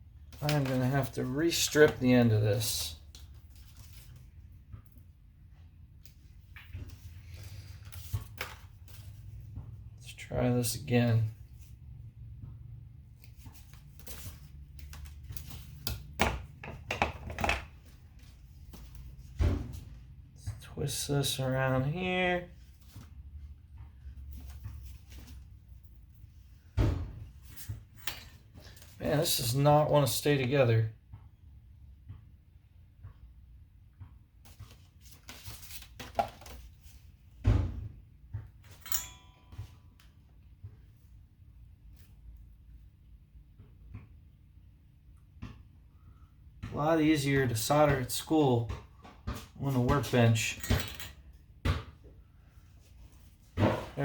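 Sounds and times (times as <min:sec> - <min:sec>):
tools clicking and knocking: 0:15.9 - 0:17.8
ringing clink: 0:38.8 - 0:39.6.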